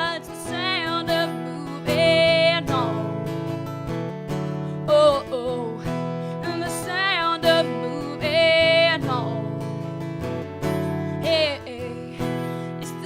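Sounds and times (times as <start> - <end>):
woman singing wordless notes: 0.0 - 3.2, 4.8 - 9.6, 11.1 - 13.0
acoustic guitar strumming: 0.0 - 13.0.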